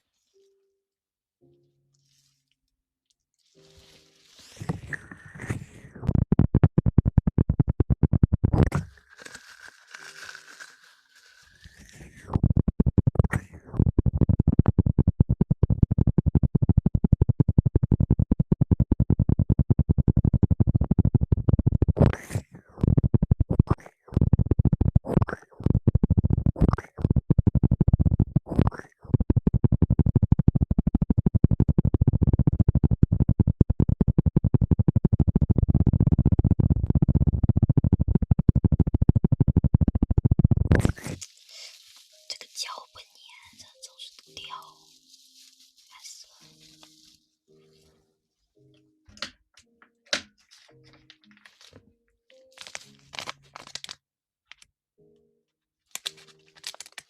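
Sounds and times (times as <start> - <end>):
scratching against microphone: 3.4 - 48.0.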